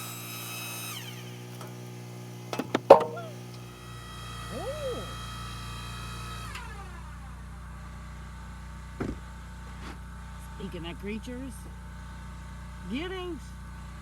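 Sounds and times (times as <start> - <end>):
short knock: 2.6 - 3.3.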